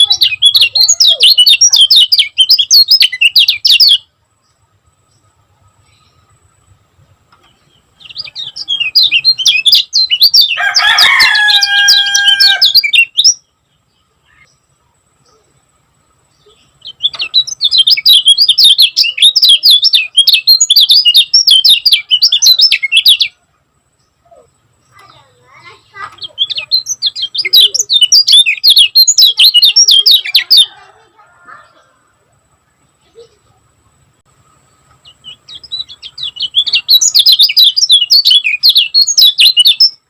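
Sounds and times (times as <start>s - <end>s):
bird chattering song: 0.0s - 40.0s
low drawn-out bird call: 7.8s - 13.2s.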